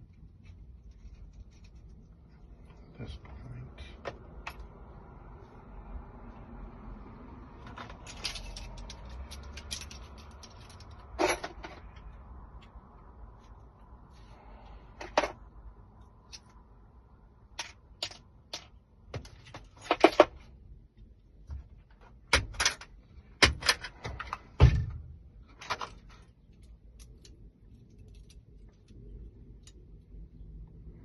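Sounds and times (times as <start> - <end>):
metallic clicks of keys and lock parts: 7.7 - 11.8, 25.5 - 30.1.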